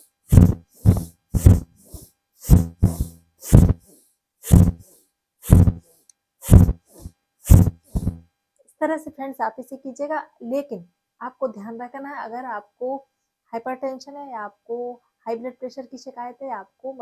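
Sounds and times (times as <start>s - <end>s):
woman inhaling with hiss: 0.0s - 8.2s.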